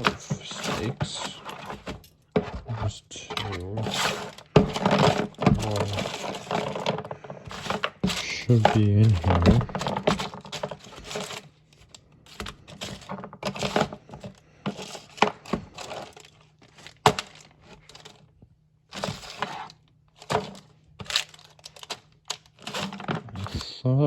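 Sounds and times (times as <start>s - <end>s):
objects clattering in container: 0.0s - 11.5s, 12.3s - 18.2s, 18.9s - 23.6s.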